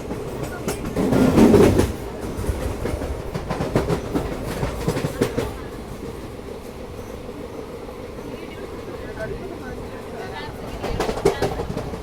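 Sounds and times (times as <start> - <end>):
train wheels clicking over rail joints: 0.0 - 6.8, 10.6 - 12.0
train rumble: 0.0 - 12.0.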